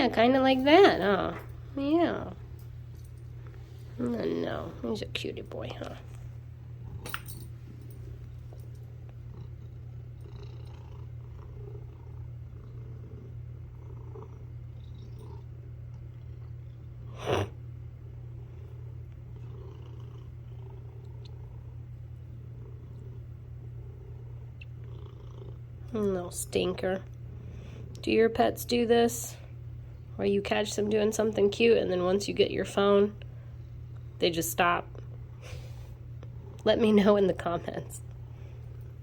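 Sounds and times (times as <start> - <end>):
cat purring: 7.8 - 29.5.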